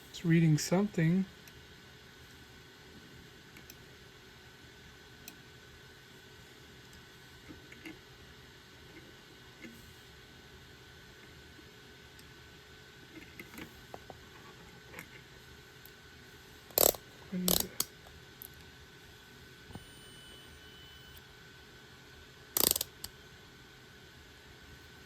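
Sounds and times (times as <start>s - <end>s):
multimeter probes clicking and clacking: 16.7s - 18.5s, 22.6s - 23.1s.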